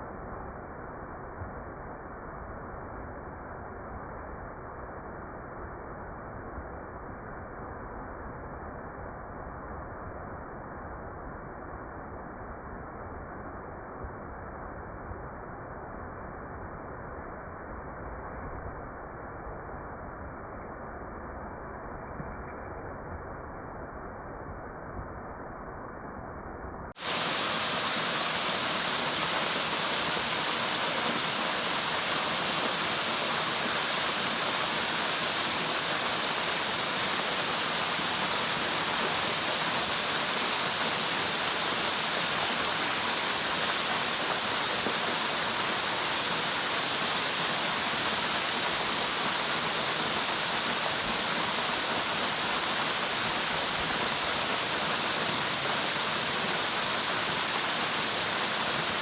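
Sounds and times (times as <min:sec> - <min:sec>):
waterfall rushing: 0:27.0 - 0:59.0.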